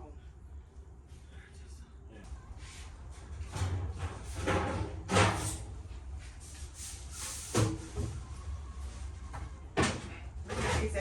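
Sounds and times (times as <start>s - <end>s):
steady low hum: 0.0s - 7.2s.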